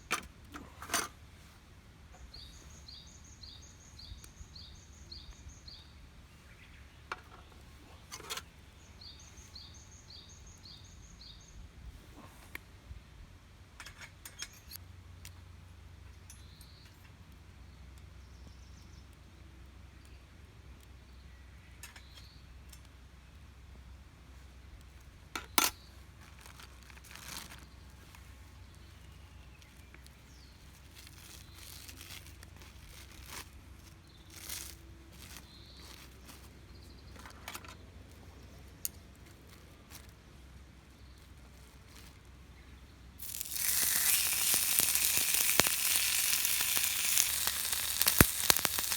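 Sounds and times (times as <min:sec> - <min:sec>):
cooking gear clicking and clinking: 0:43.2 - 0:48.9
food sizzling on griddle: 0:43.2 - 0:48.9.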